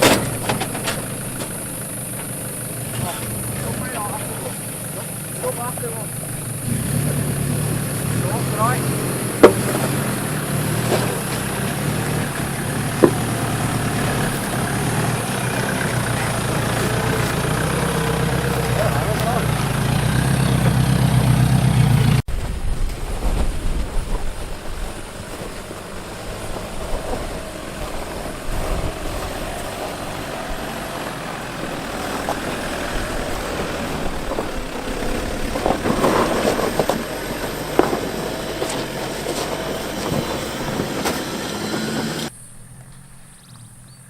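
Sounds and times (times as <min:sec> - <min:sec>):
engine running at low revs: 0:00.0 - 0:44.0
knocks on rocks: 0:12.9 - 0:14.6, 0:35.5 - 0:41.2.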